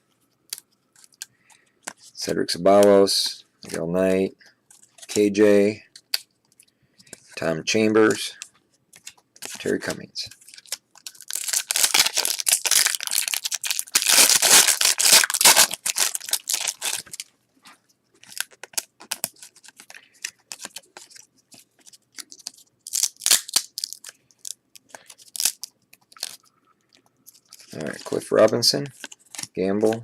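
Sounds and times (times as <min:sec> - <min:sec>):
cards rustling and clicking: 0:08.0 - 0:17.3, 0:18.2 - 0:26.4, 0:27.3 - 0:30.0
card pack wrapper tearing and crinkling: 0:09.0 - 0:17.3, 0:18.2 - 0:21.2, 0:21.8 - 0:26.4.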